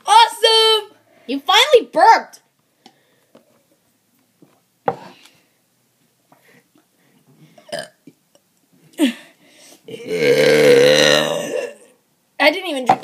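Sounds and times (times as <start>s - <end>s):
girl burping: 7.7s - 8.0s, 9.9s - 12.0s.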